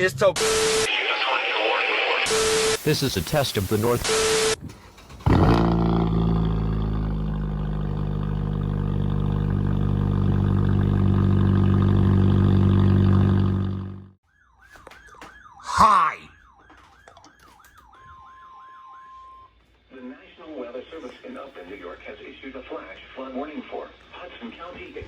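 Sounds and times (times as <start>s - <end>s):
buzzing alarm tone: 2.3s - 4.6s, 13.4s - 19.6s
warbling siren: 3.8s - 19.6s.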